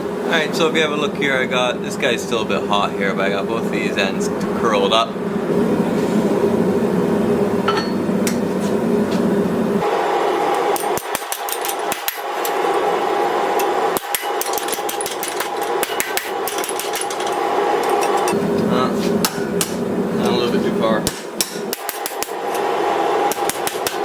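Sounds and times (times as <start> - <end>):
hammer striking hot steel: 7.6 - 8.5, 10.5 - 12.8, 13.4 - 18.4, 19.2 - 19.8, 21.0 - 24.0.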